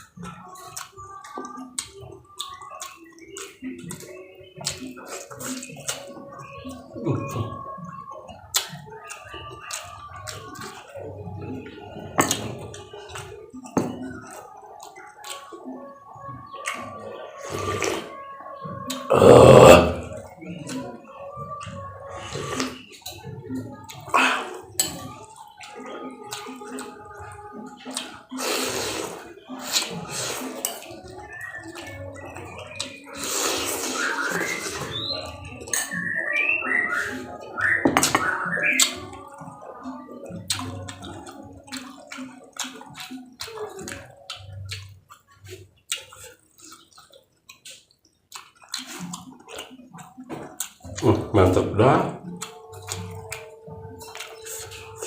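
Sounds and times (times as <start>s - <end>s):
person chewing wetly: 0.0s - 55.0s
mouth clicks: 40.2s - 55.0s.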